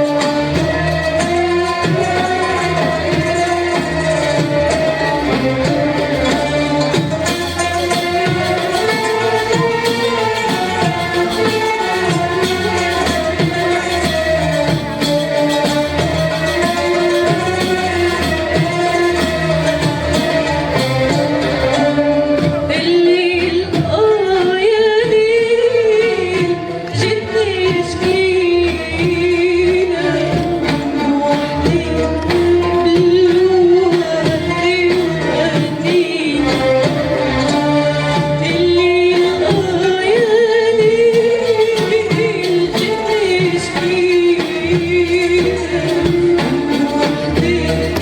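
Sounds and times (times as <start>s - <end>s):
music ensemble playing: 0.0s - 48.0s
woman singing with vibrato: 0.0s - 48.0s.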